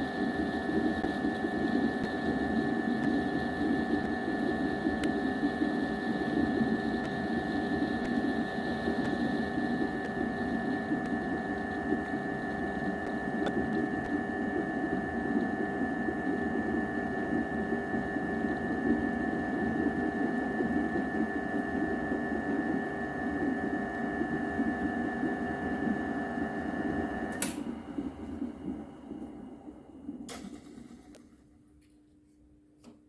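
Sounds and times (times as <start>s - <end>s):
electric machine humming and whining: 0.0s - 32.3s
switch click: 27.3s - 27.6s.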